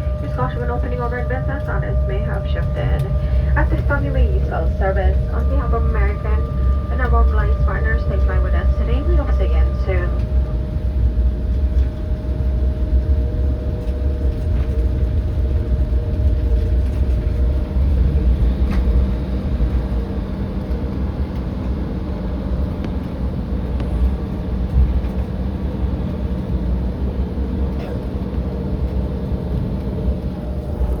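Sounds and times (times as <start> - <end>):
faint steady whine: 0.0 - 15.3
aircraft engine rumble: 0.0 - 31.0.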